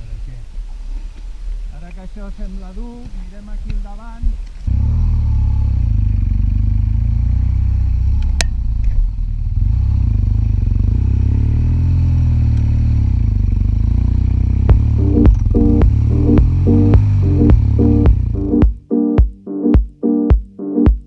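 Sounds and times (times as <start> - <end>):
vehicle engine under load: 4.6 - 18.6
piano music: 14.7 - 21.0
sharp click: 15.2 - 15.6.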